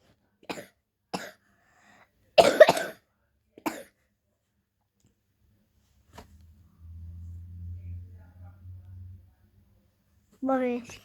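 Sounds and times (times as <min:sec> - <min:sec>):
girl coughing: 0:02.4 - 0:03.0.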